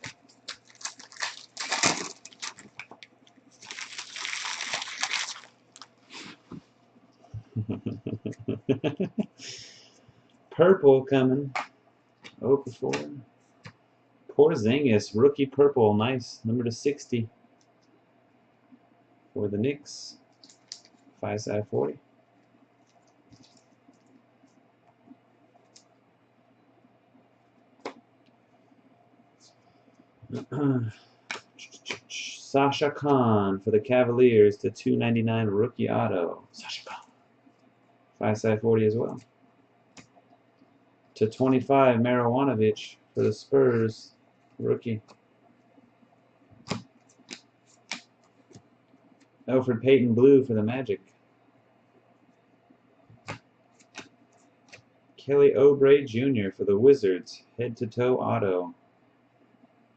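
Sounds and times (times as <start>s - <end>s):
wrapper crinkling: 0.0s - 6.3s, 20.3s - 21.0s
faint steady low hum: 0.0s - 59.9s.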